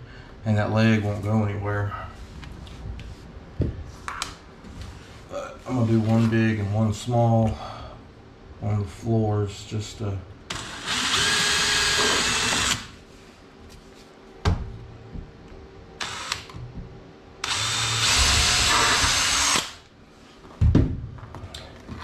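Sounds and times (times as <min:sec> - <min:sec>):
power drill driving screws: 0:10.5 - 0:12.9, 0:16.0 - 0:16.5, 0:17.4 - 0:19.8.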